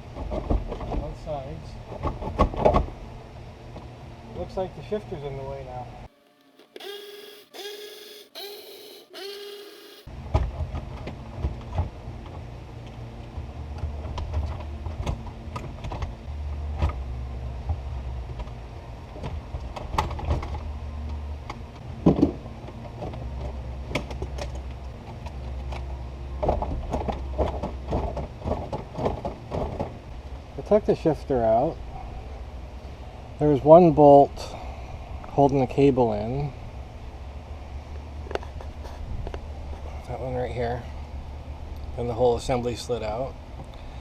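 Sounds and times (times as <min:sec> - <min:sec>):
low hum: 0:05.0 - 0:10.3.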